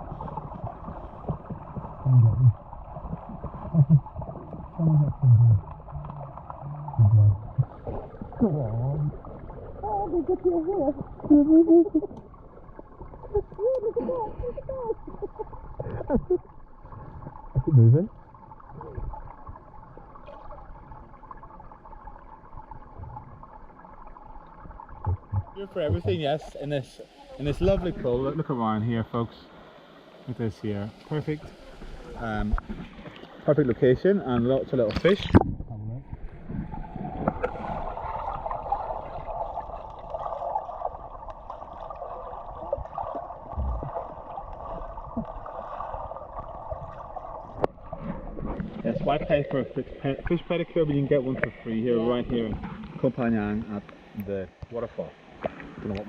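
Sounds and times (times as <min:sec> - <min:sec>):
stream pouring into pool: 0:00.0 - 0:29.0, 0:30.3 - 0:54.4.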